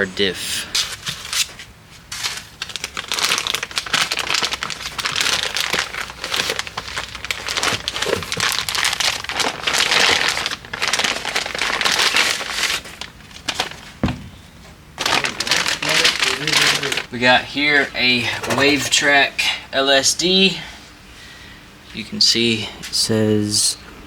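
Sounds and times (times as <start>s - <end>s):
packaging crinkling: 2.2s - 13.9s, 15.0s - 17.1s.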